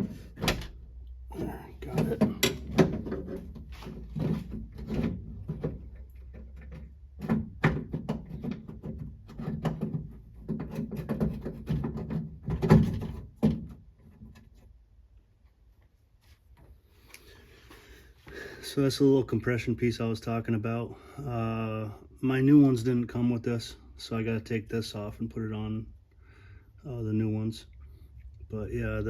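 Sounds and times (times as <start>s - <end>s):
handle parts knocking and rattling: 0.0s - 14.6s.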